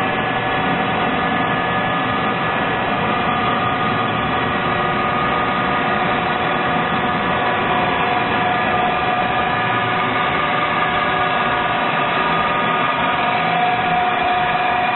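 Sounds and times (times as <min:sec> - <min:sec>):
workshop machine whining: 0:00.0 - 0:14.9.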